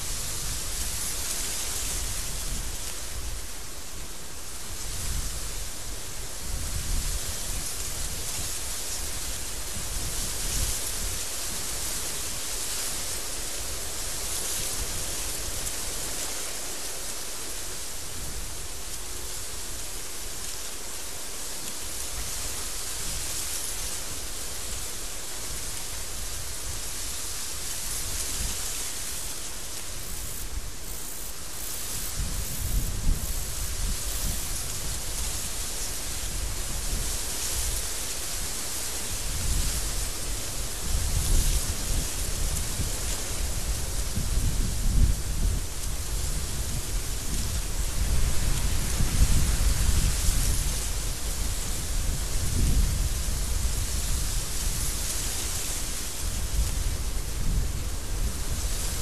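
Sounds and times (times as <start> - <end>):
wind blowing: 22.0 - 59.0.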